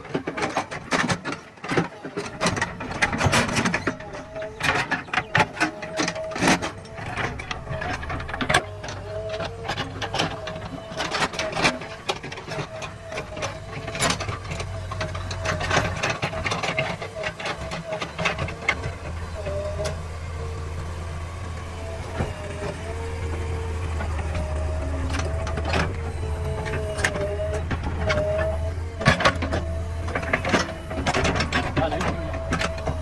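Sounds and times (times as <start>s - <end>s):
diesel engine whining: 0.0s - 33.0s.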